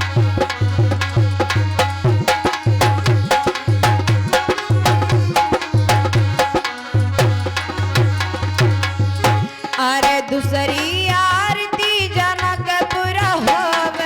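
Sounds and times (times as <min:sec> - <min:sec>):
sustained melody line: 0:00.0 - 0:09.7
hand drums fast rhythm: 0:00.0 - 0:14.0.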